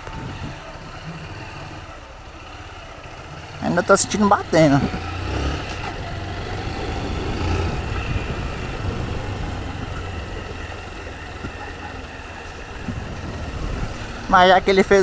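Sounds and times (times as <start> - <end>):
wind noise on microphone: 0.0 - 0.8, 4.8 - 15.0
motorcycle engine running: 0.0 - 15.0.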